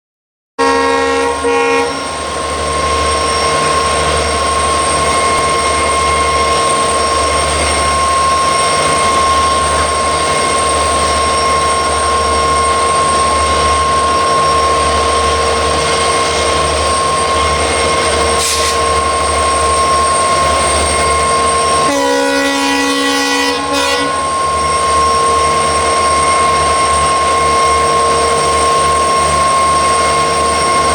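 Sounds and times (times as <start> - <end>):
train horn note: 0.6 - 2.3, 18.4 - 19.0, 21.8 - 24.8
diesel locomotive humming: 0.6 - 30.9
high turbo whine: 0.6 - 30.9.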